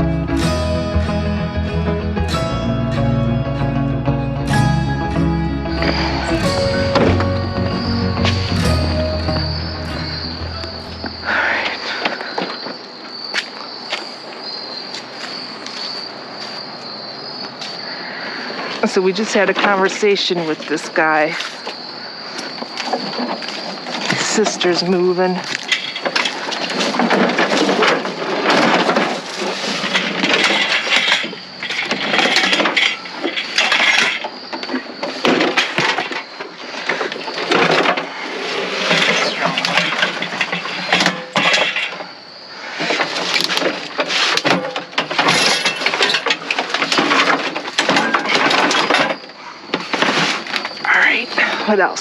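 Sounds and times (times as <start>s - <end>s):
hard objects clattering and crashing: 22.6s - 42.2s, 42.8s - 50.8s.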